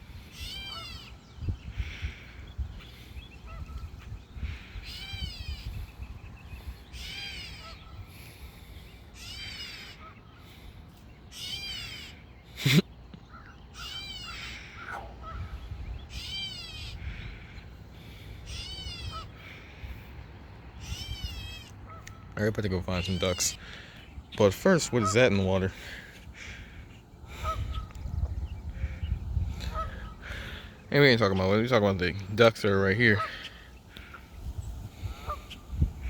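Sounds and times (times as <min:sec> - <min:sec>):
crow cawing: 0:09.2 - 0:10.6, 0:11.3 - 0:12.2, 0:13.3 - 0:20.1, 0:25.0 - 0:28.0, 0:28.6 - 0:30.7, 0:33.1 - 0:34.4.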